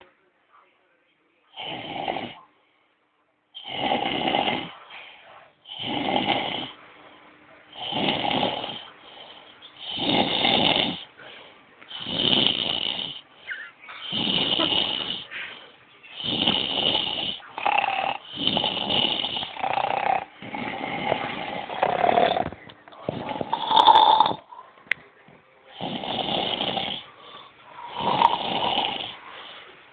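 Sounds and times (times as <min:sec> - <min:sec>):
person snoring: 0:01.6 - 0:02.4, 0:03.6 - 0:04.8, 0:05.7 - 0:06.8, 0:07.7 - 0:11.1, 0:11.9 - 0:13.2, 0:14.0 - 0:24.6, 0:25.7 - 0:29.6.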